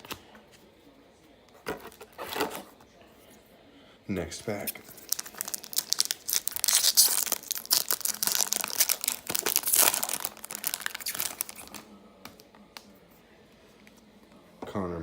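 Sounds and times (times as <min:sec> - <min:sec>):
wrapper crinkling and tearing: 0:04.6 - 0:11.9.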